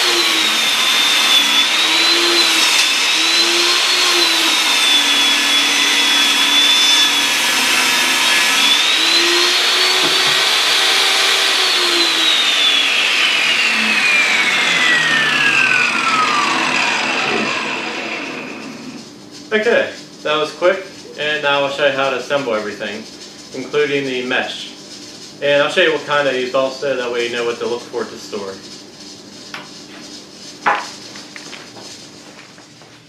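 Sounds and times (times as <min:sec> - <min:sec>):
table saw ripping boards: 0:00.0 - 0:19.0.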